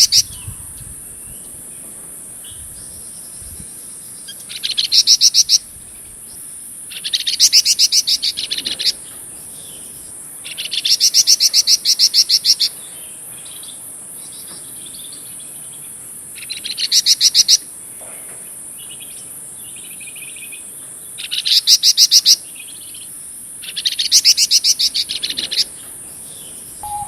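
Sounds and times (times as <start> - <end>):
songbird singing rapid trills: 0.0 - 1.8, 2.4 - 15.7, 21.2 - 27.0.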